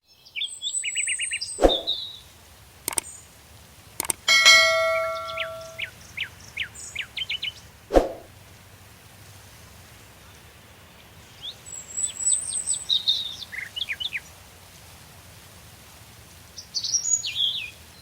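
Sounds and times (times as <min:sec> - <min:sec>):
sharp clicks or knocks: 0:04.0 - 0:05.8
songbirds singing: 0:04.0 - 0:07.7
bell-like ding: 0:04.3 - 0:05.9.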